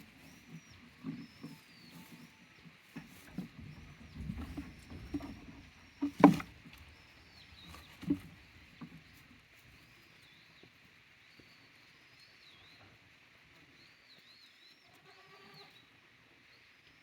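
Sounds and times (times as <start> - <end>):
goats knocking and thumping: 2.9 - 9.2.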